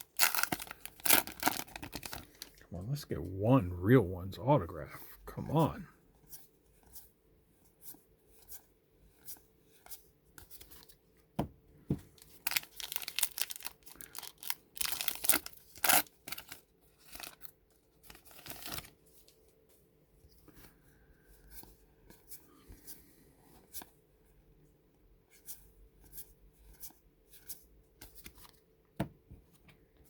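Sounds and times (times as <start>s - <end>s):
wrapper tearing and rustling: 0.0s - 2.6s, 12.2s - 19.0s.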